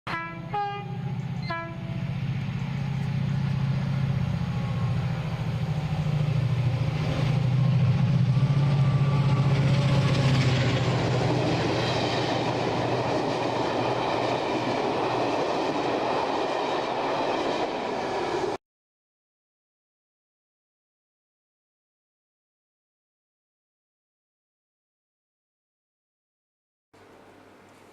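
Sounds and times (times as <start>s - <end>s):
model locomotive humming: 0.2s - 18.6s.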